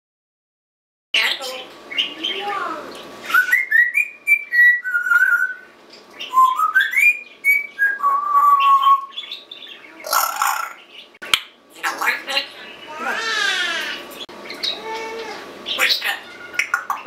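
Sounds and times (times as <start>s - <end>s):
parrot whistling: 3.2s - 9.4s.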